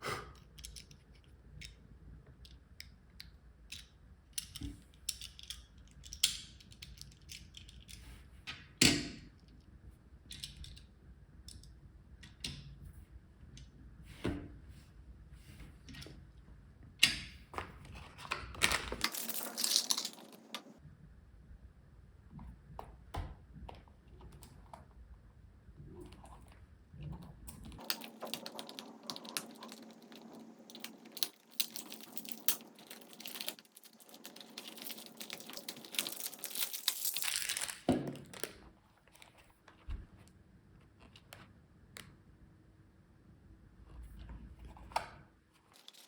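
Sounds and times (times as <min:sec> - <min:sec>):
packaging clicks: 0:18.6 - 0:20.8, 0:27.8 - 0:38.5, 0:45.8 - 0:46.0
plastic and cardboard crinkling: 0:18.6 - 0:20.8, 0:27.8 - 0:39.4, 0:45.7 - 0:46.0.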